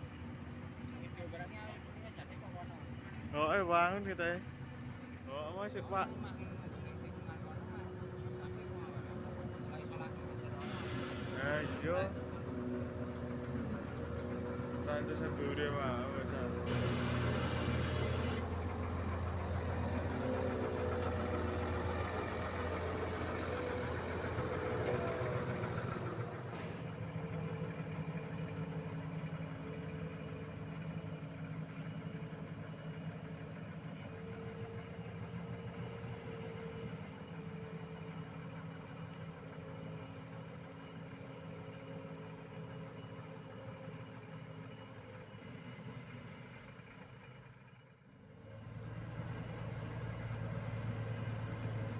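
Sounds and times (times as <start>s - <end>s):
heavy diesel engine running: 0.0s - 51.9s
short hisses: 10.6s - 11.8s, 16.6s - 18.6s, 26.4s - 26.9s.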